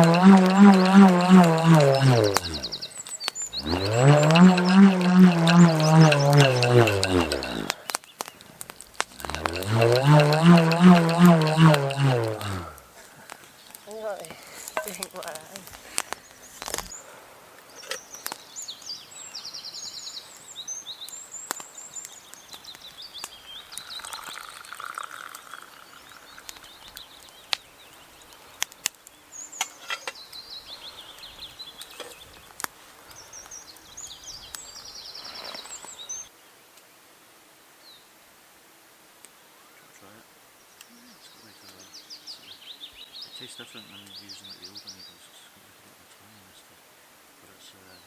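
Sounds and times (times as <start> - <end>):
songbird trilling: 0.0 - 8.4, 9.1 - 12.9
light outdoor background noise: 0.0 - 48.0.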